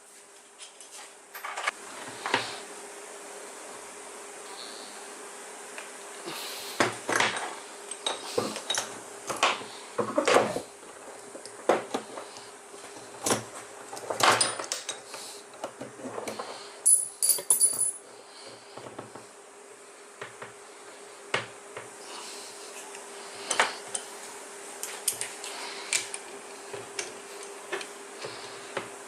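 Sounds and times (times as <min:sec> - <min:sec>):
metal parts clinking and knocking: 0:16.8 - 0:18.0.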